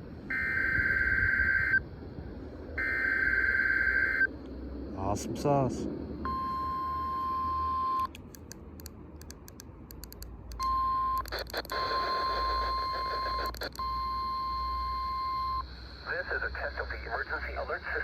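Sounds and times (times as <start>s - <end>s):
steady high alarm tone: 0.3s - 1.8s, 2.8s - 4.3s
static bursts: 11.2s - 13.8s
radio clicks and crackle: 11.2s - 14.0s.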